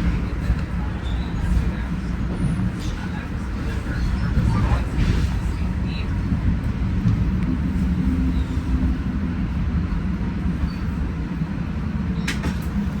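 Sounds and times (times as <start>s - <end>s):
train rumbling on rails: 0.0s - 13.0s.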